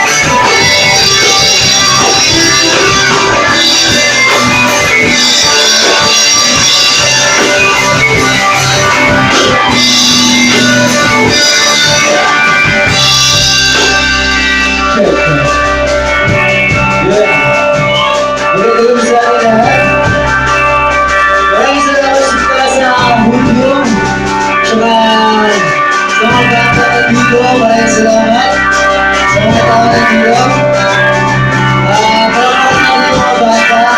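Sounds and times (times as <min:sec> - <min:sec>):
sliding melody line: 0:00.0 - 0:25.6
drums with cymbal crashes: 0:00.0 - 0:33.9
electric guitar: 0:00.0 - 0:33.9.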